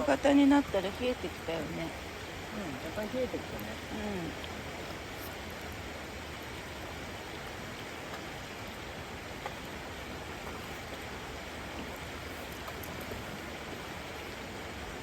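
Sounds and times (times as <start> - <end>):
river water rushing: 0.0 - 15.0
faint ticks: 11.7 - 13.4.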